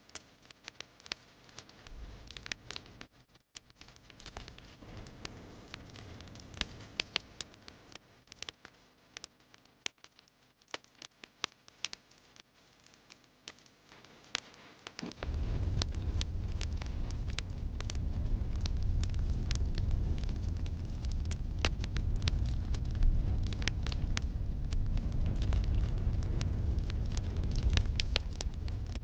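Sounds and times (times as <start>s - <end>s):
wood fire crackling and popping: 0.0s - 29.0s
loud low rumble: 15.2s - 29.0s.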